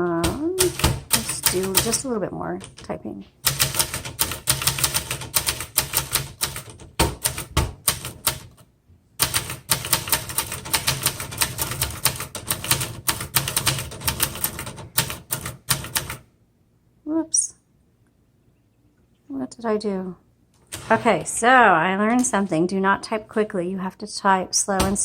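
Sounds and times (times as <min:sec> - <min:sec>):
manual typewriter key strikes: 0:00.2 - 0:08.6, 0:09.2 - 0:16.2.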